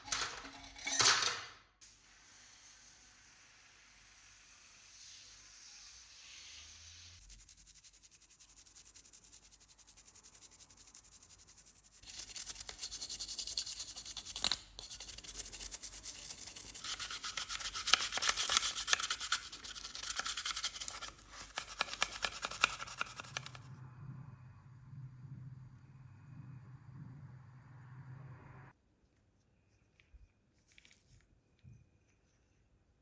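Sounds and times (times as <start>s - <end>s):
rubbing and scraping strokes: 7.2s - 23.7s.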